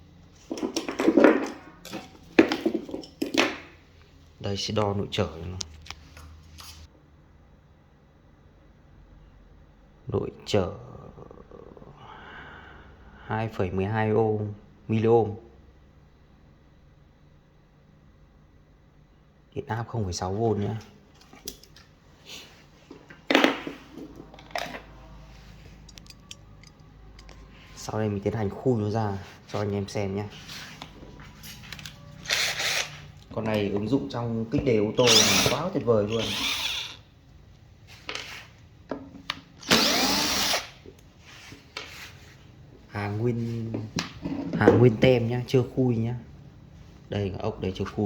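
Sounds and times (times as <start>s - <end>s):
hard objects knocking: 0.4s - 3.7s, 23.3s - 24.8s.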